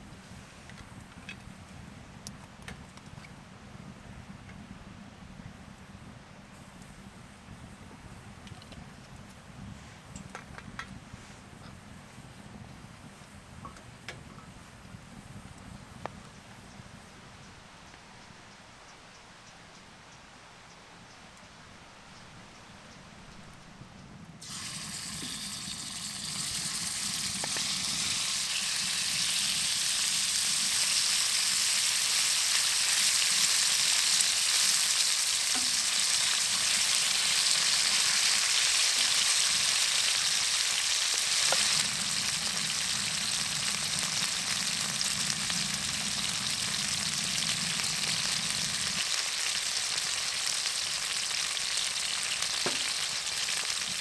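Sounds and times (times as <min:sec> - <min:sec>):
food sizzling in a pan: 0:24.4 - 0:54.0.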